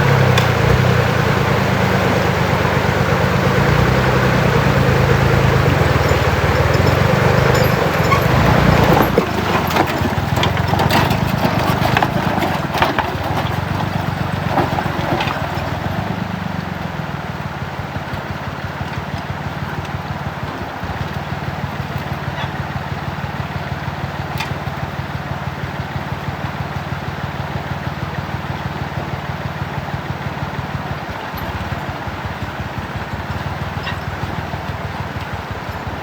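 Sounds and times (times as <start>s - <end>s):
engine chugging: 0.0s - 36.0s
scattered clicks and knocks: 4.6s - 16.0s.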